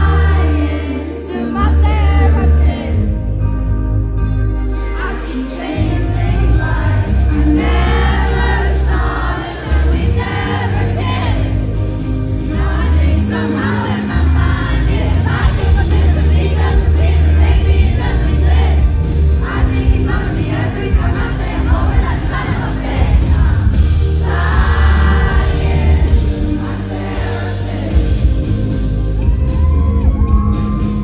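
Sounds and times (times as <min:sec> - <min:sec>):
woman singing: 0:00.0 - 0:03.3
crowd singing along: 0:00.0 - 0:03.5, 0:04.6 - 0:29.4
band with heavy bass: 0:00.0 - 0:31.0.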